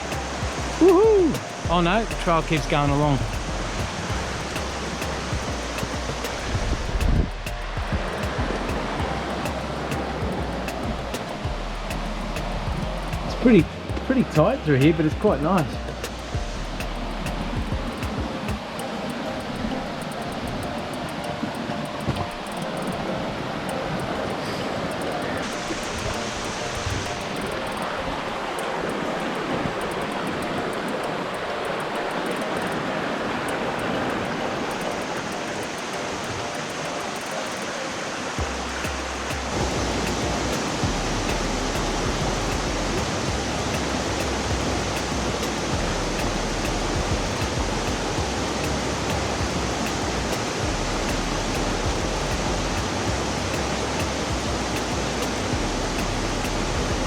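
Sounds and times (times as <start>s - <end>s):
creek water rushing: 0.0s - 57.0s
low rumble: 39.6s - 53.4s.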